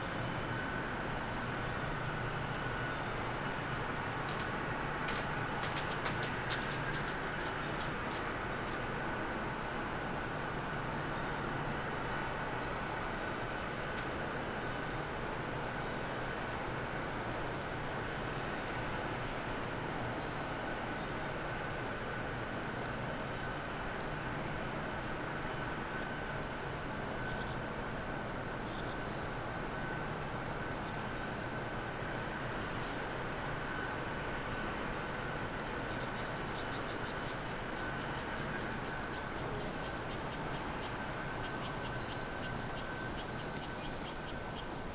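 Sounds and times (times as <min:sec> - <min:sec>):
outdoor background hiss: 0:00.0 - 0:44.9
small birds chipping: 0:04.2 - 0:08.8.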